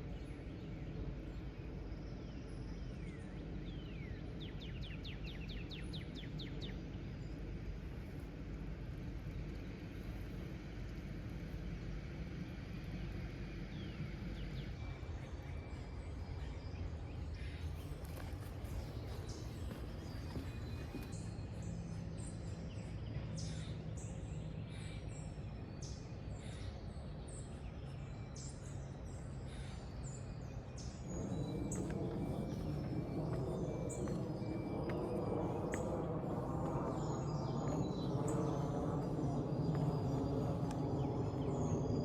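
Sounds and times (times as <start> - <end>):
low background rumble: 0.0 - 42.0
birds chirping: 12.8 - 42.0.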